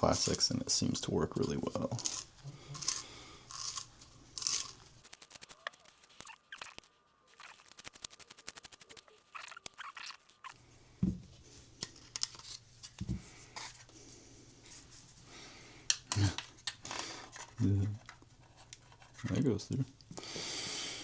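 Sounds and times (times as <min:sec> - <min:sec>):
reamer cutting plastic: 0:00.0 - 0:10.6.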